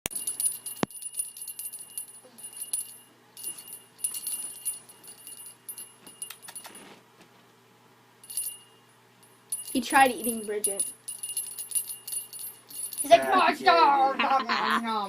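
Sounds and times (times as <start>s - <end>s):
small bells ringing: 0.1s - 6.8s, 8.2s - 14.0s.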